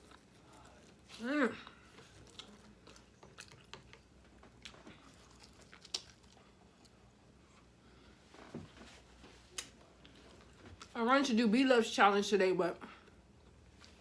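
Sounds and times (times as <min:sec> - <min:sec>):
person chewing food: 0:00.0 - 0:08.5.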